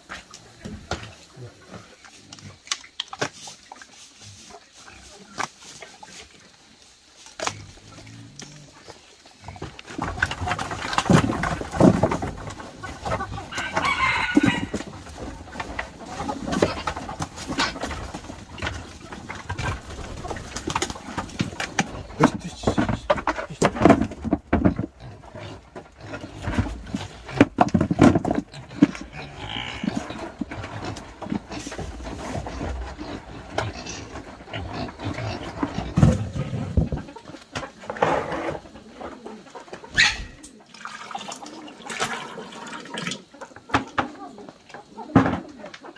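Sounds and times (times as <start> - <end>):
knocks and clatter: 9.4 - 13.5, 14.6 - 38.6
rooster crowing: 13.5 - 14.9.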